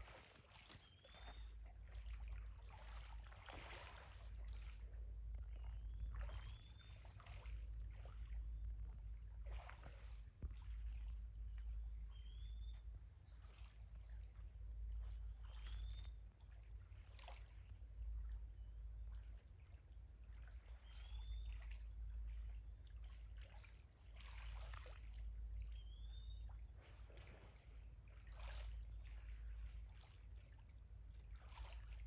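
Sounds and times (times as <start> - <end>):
paddle strokes in water: 0.0 - 32.0
steady low rumble: 1.4 - 20.8.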